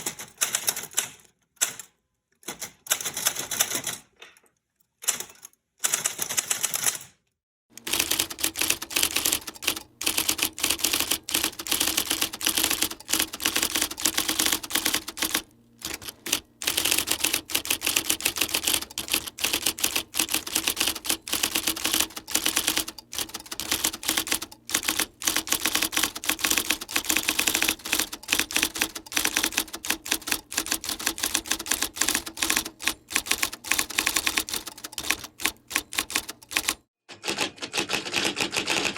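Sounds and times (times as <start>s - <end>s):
typewriter keys clacking: 7.8s - 38.9s.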